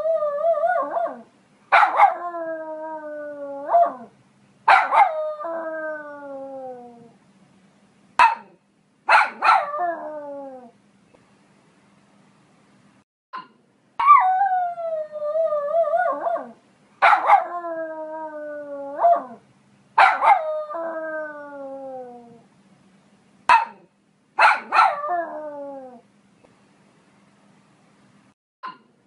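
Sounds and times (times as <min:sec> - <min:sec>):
dog barking: 0:01.7 - 0:02.2, 0:04.7 - 0:05.2, 0:08.2 - 0:09.7, 0:17.0 - 0:17.4, 0:20.0 - 0:20.4, 0:23.5 - 0:25.0.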